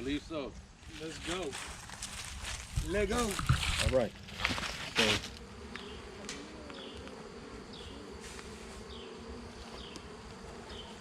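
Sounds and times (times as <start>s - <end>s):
bees buzzing: 3.5s - 11.0s.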